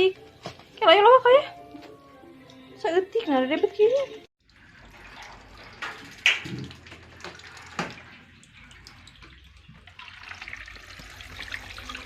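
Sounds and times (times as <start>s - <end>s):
water running from a tap: 3.5s - 12.0s.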